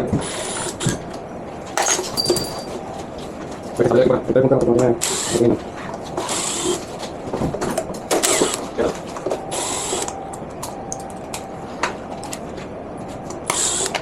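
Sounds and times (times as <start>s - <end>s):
tool clicks and clatter: 1.8s - 2.8s.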